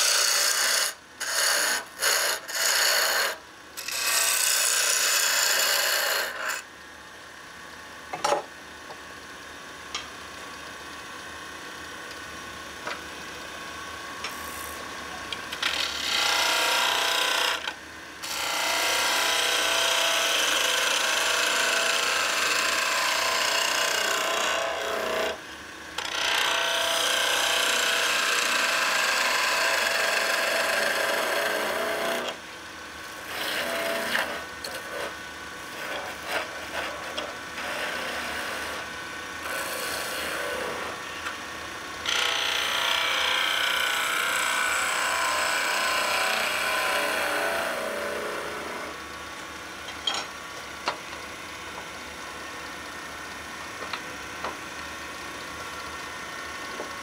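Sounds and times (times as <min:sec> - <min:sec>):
lathe tool cutting wood: 0:00.0 - 0:06.6, 0:15.6 - 0:25.4, 0:26.0 - 0:32.4, 0:33.2 - 0:41.0, 0:42.0 - 0:49.0.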